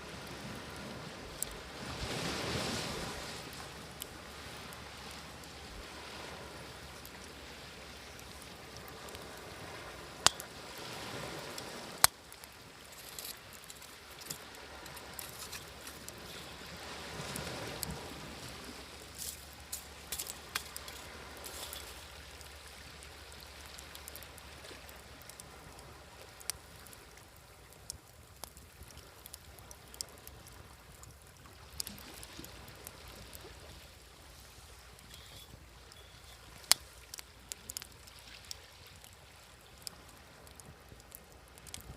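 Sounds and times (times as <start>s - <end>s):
small waves washing: 0.0s - 27.3s
wood fire crackling and popping: 0.1s - 41.9s.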